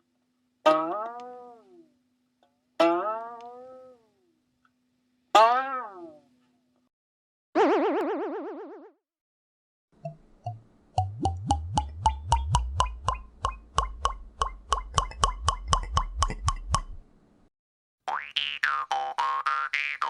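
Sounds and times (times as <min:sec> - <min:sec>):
cartoon springy plucks: 0:00.7 - 0:01.6, 0:02.8 - 0:03.9, 0:10.0 - 0:17.0, 0:18.1 - 0:20.0.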